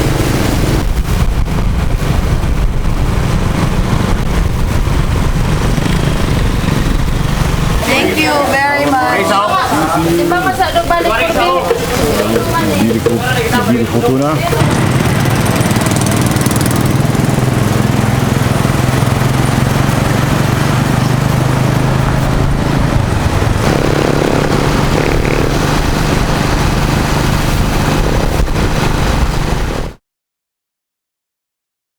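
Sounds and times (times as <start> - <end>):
small engine running: 5.1 - 7.8, 14.6 - 29.2.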